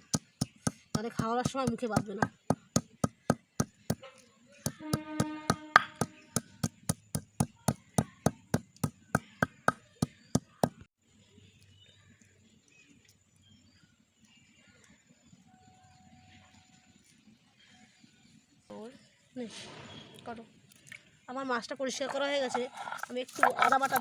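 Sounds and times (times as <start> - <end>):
dried fish being pounded: 0.0 - 4.0, 4.7 - 10.8.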